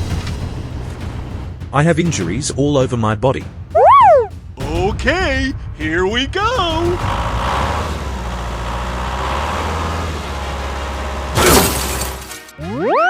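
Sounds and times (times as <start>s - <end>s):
truck engine rumbling: 0.0s - 12.8s
sudden loud noisy burst: 4.0s - 12.2s.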